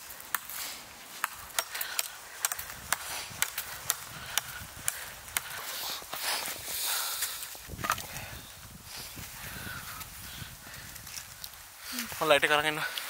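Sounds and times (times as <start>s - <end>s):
knife chopping firewood: 0.0s - 6.6s, 7.2s - 8.2s.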